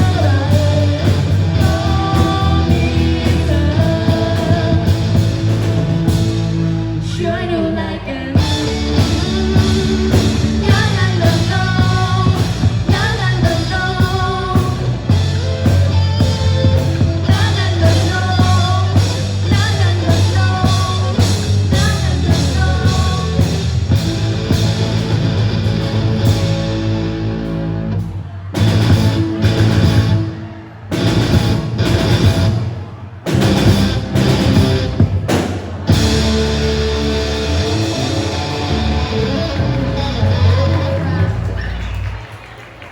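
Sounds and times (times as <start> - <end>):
person singing: 0.0 - 5.4, 7.0 - 23.6
band with electric guitar: 0.0 - 42.9.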